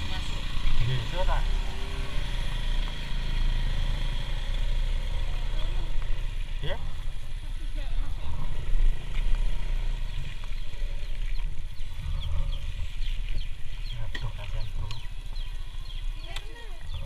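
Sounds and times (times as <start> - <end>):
birds chirping: 0.0 - 17.0
low rumble: 5.0 - 17.0.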